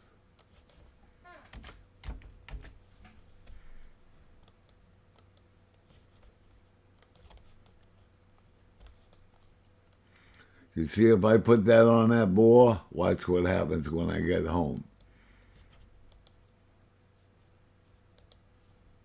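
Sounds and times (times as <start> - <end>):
faint clicks and light taps: 0.3 - 1.0, 4.4 - 10.5, 14.8 - 16.6, 17.4 - 18.8.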